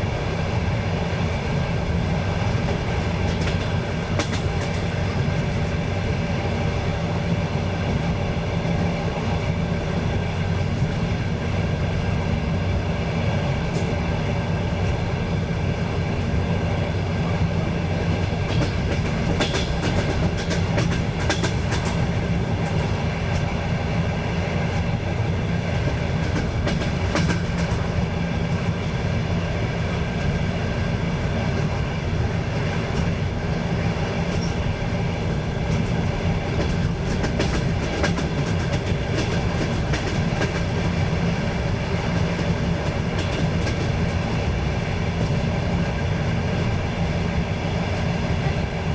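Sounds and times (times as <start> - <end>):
train rumble and hum: 0.0 - 48.9
wheels clicking over rail joints: 2.4 - 6.0, 18.0 - 23.6, 25.8 - 29.1, 34.0 - 46.0.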